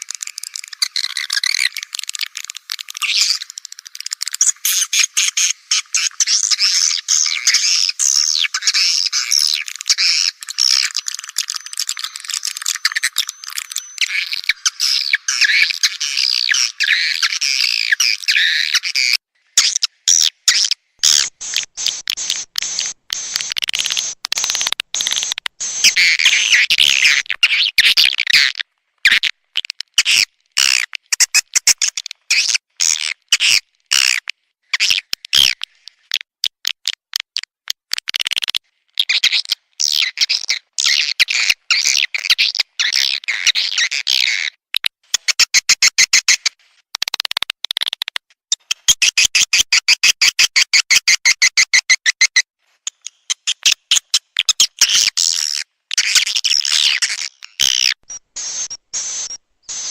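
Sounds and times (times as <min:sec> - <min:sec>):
high twittering bird chirps: 0:00.3 - 0:28.5, 0:54.1 - 0:59.9.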